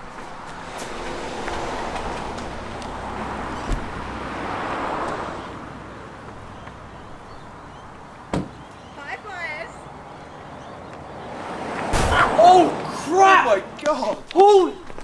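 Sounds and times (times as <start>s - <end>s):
car driving up: 0.0s - 9.0s
thump: 3.7s - 4.0s, 8.3s - 8.6s, 11.9s - 12.3s.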